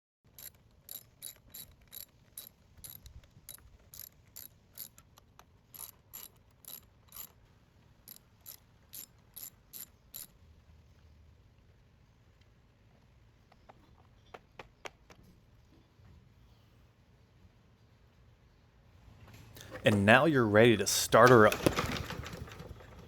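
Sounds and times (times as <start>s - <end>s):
socket ratchet clicking: 0.3s - 7.3s, 8.1s - 10.3s.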